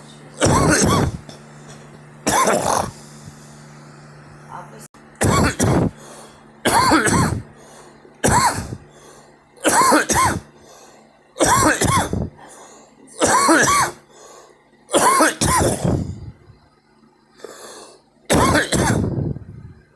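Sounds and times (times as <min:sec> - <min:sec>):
person coughing: 0:00.4 - 0:01.4, 0:02.3 - 0:03.0, 0:05.2 - 0:06.0, 0:06.7 - 0:07.5, 0:08.2 - 0:08.8, 0:09.6 - 0:10.5, 0:11.4 - 0:12.3, 0:13.2 - 0:14.0, 0:14.9 - 0:16.2, 0:18.3 - 0:19.1.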